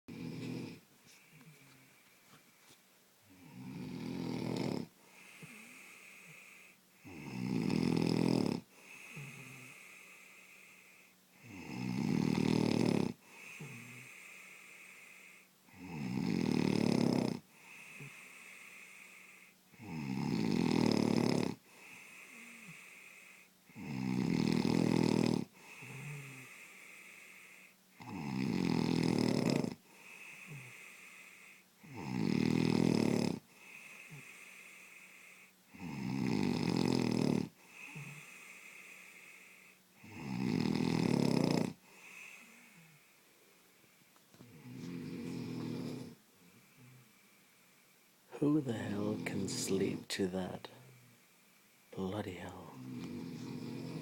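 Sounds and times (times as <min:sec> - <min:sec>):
person snoring heavily: 0:00.1 - 0:01.6, 0:03.3 - 0:43.0, 0:44.5 - 0:47.2, 0:48.4 - 0:51.2, 0:52.0 - 0:54.0
soft breathing: 0:00.3 - 0:03.7, 0:04.8 - 0:07.0, 0:08.7 - 0:11.3, 0:13.2 - 0:15.6, 0:17.4 - 0:19.6, 0:21.6 - 0:23.7, 0:25.5 - 0:27.8, 0:29.8 - 0:31.8, 0:33.4 - 0:35.7, 0:37.5 - 0:40.1, 0:41.7 - 0:54.0.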